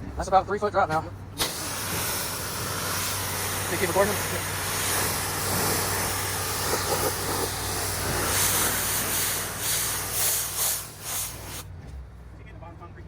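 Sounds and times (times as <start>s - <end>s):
engine hum: 0.0s - 13.0s
pressure washer spray hissing: 1.4s - 11.7s.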